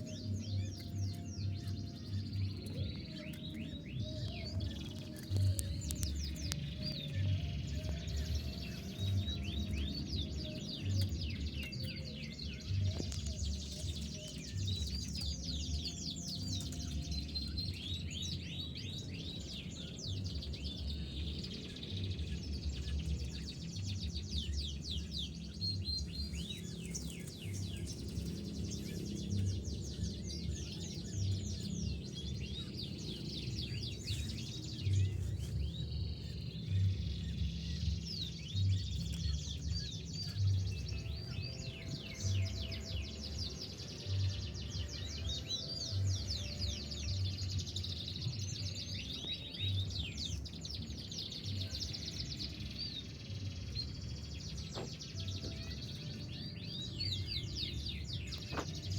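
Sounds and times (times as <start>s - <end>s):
canary chirping and trilling: 0.0s - 58.9s
background music with low beat: 57.2s - 58.9s.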